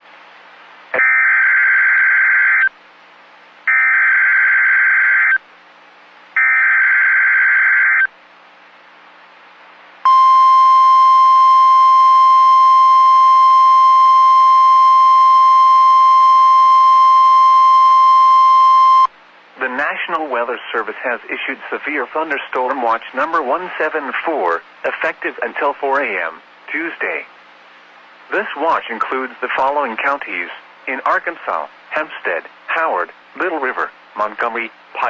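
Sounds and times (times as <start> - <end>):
steady warning alarm tone: 10.1 - 19.1.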